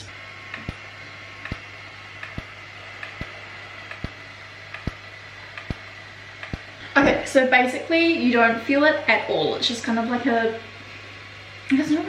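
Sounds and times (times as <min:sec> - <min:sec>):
steady hum: 0:00.0 - 0:12.0
thin steady whine: 0:00.0 - 0:12.0
device clicks: 0:01.4 - 0:05.0, 0:05.6 - 0:06.7.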